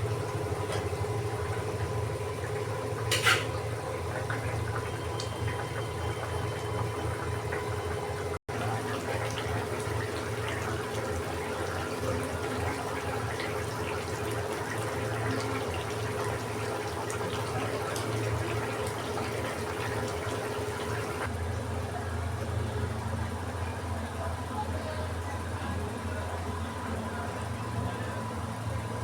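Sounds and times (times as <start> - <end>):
curry bubbling in a pan: 0.0 - 21.3.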